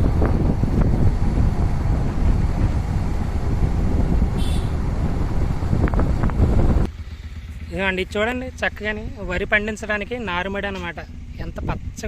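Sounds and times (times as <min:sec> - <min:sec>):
wind buffeting microphone: 0:00.0 - 0:07.0
road and engine noise: 0:00.0 - 0:12.0.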